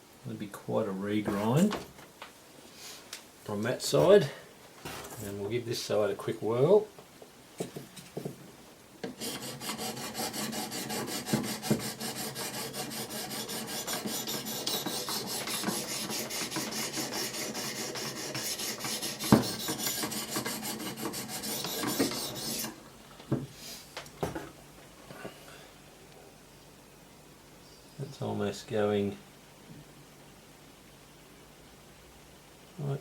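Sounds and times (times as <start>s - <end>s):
sharpening stone rasping on blade: 9.2s - 22.7s.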